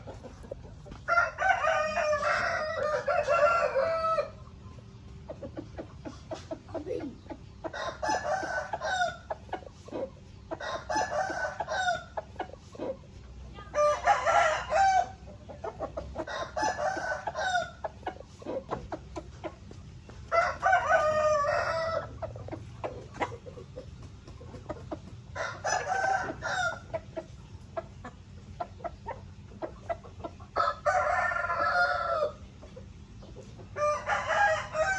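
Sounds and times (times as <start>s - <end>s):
rooster clucking: 0.0s - 34.9s
rooster crowing: 1.1s - 4.4s, 13.8s - 15.2s, 20.3s - 22.2s, 25.4s - 26.9s, 30.6s - 32.4s, 33.8s - 34.9s.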